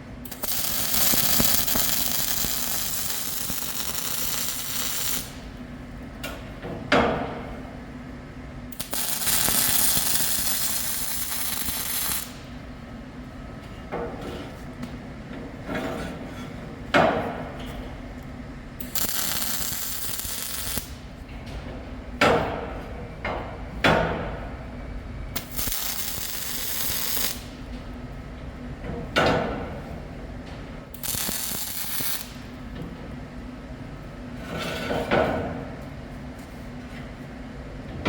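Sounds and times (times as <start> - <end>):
low steady hum: 0.0 - 34.4
welding crackling hiss: 0.3 - 5.5, 8.8 - 12.6, 18.8 - 21.1, 25.4 - 27.6, 31.0 - 32.6.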